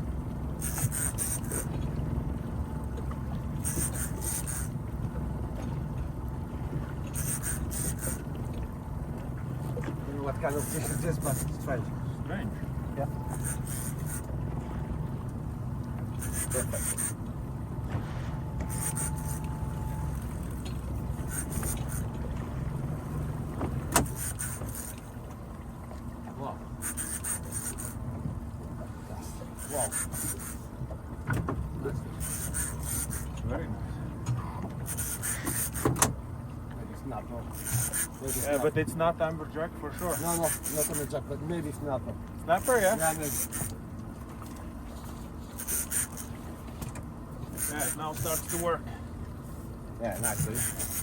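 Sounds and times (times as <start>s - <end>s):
boat engine humming: 0.0s - 51.0s
faint ticks: 0.6s - 1.8s, 3.6s - 4.8s, 7.2s - 8.3s, 10.5s - 11.6s, 13.3s - 14.3s, 16.2s - 17.2s, 18.6s - 22.2s, 32.2s - 33.4s, 34.3s - 35.9s, 45.6s - 46.4s.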